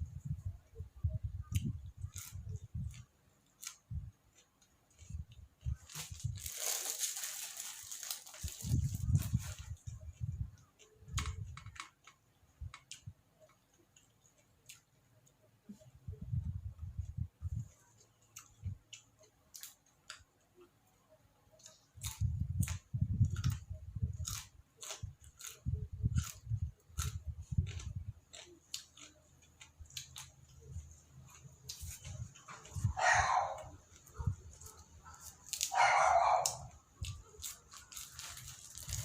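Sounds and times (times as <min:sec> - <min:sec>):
person chewing crunchy food: 0:01.5 - 0:12.1, 0:21.6 - 0:39.0
dog barking: 0:32.8 - 0:36.8.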